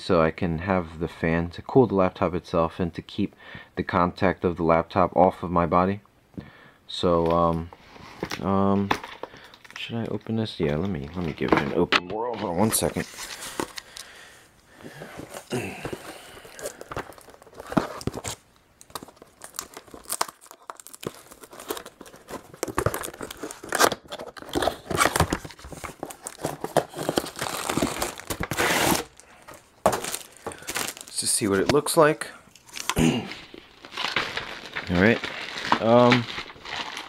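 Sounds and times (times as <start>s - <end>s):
packaging tearing and crinkling: 15.4s - 32.0s, 32.6s - 37.0s.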